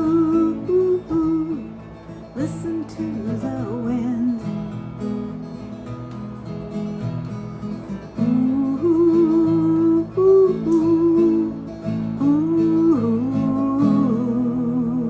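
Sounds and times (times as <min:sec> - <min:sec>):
woman singing wordless ooh: 0:00.0 - 0:01.7, 0:02.4 - 0:04.6, 0:08.2 - 0:15.0
acoustic guitar strumming: 0:00.0 - 0:15.0.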